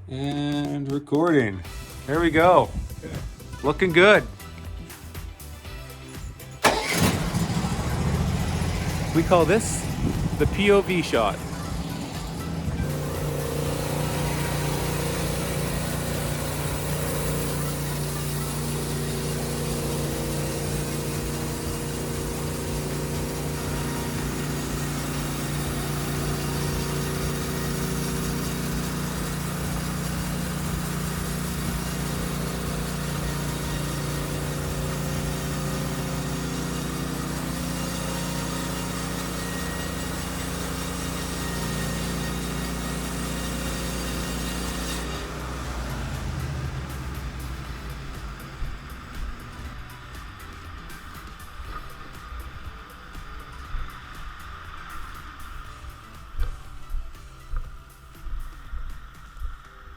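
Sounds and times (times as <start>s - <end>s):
band sawmill engine running: 0.3s - 59.9s
broad rushing noise: 7.0s - 29.6s.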